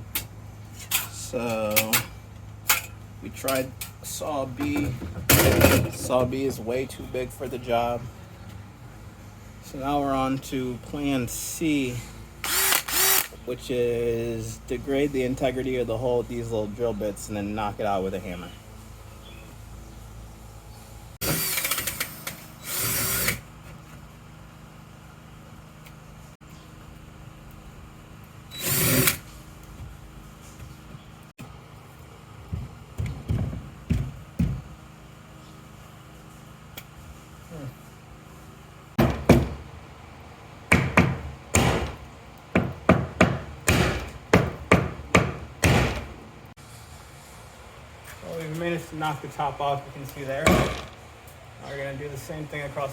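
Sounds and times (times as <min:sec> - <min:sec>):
power drill boring: 0:12.4 - 0:13.4, 0:21.2 - 0:23.4, 0:28.5 - 0:29.2
hammer striking wooden door: 0:39.0 - 0:39.7, 0:40.7 - 0:42.0, 0:42.6 - 0:46.1, 0:50.4 - 0:51.0.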